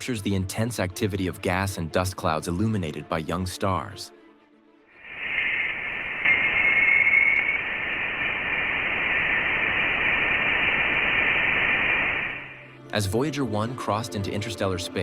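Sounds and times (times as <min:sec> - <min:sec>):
faint thin tone: 0:05.0 - 0:12.6
static-like hiss: 0:05.0 - 0:12.6.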